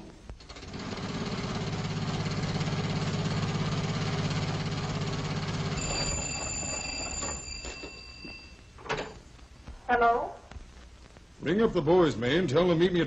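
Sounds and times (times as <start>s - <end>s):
high steady ringing tone: 5.4s - 9.2s.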